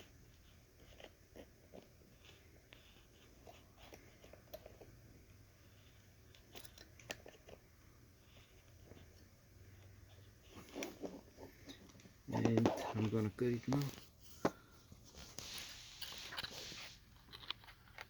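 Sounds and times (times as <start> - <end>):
small clicks and rustles of hands: 15.3 - 18.0.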